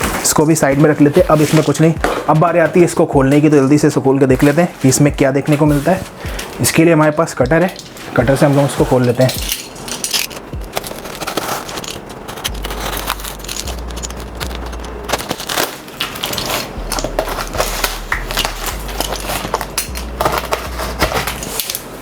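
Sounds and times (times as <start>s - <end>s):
tape and cardboard crackling: 0.0s - 22.0s
box cutter slicing packing tape: 9.3s - 22.0s.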